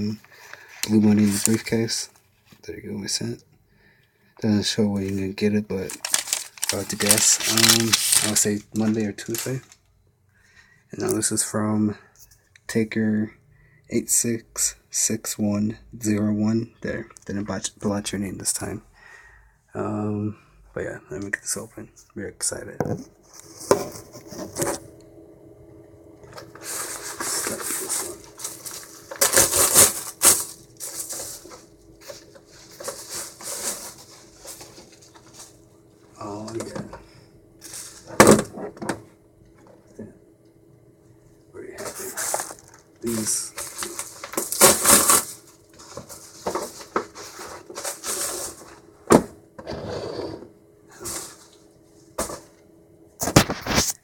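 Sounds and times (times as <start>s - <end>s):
packaging tearing and rustling: 0.8s - 1.7s, 5.7s - 9.8s, 26.4s - 35.5s, 41.9s - 48.6s, 53.3s - 54.0s.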